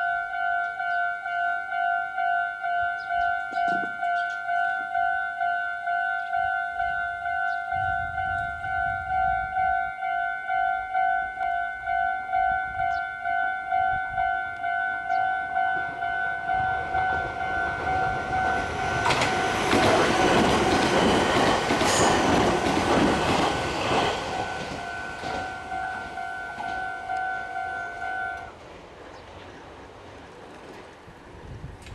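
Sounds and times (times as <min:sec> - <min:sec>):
level-crossing bell ringing: 0:00.0 - 0:28.5
train wheels rattling: 0:15.1 - 0:31.9.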